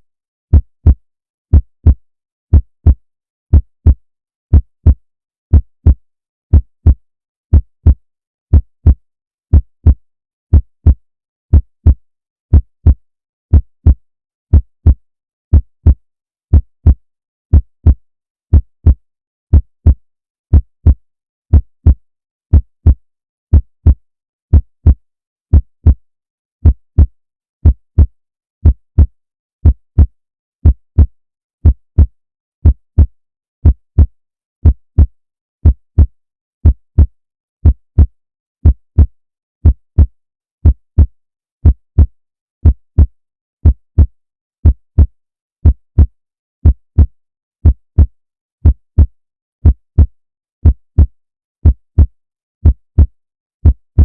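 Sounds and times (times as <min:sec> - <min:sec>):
heartbeat thumps: 0:26.6 - 0:54.0.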